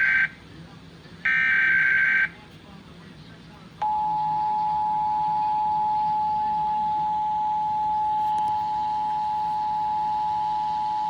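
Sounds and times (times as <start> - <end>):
two-tone alarm signal: 0.0 - 0.4, 1.3 - 2.3, 3.8 - 11.0.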